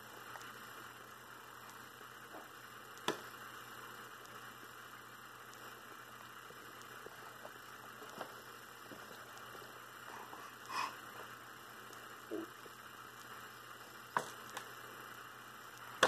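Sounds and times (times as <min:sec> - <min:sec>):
room hiss: 0:00.0 - 0:16.0
faint ticks: 0:04.1 - 0:04.4, 0:05.4 - 0:16.0.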